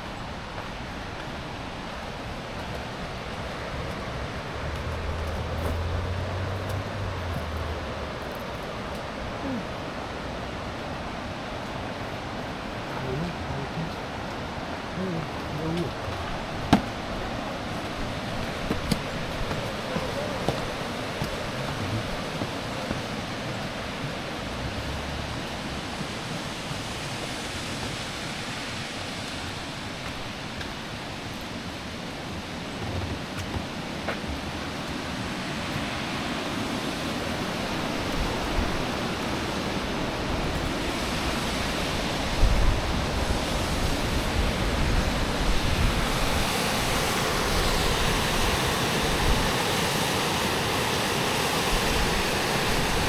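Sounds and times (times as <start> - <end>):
rushing river water: 0.0 - 53.0
wind buffeting microphone: 28.2 - 53.0.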